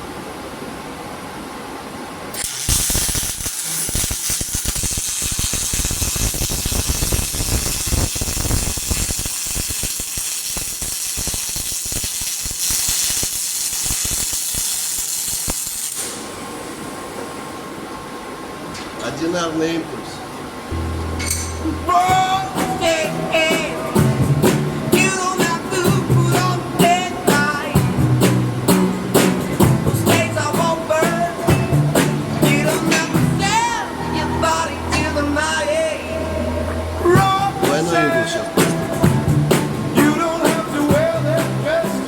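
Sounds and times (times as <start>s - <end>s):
machine hum: 0.0s - 19.2s, 19.8s - 42.0s
welding arc crackling buzz: 2.3s - 17.1s, 20.7s - 36.4s.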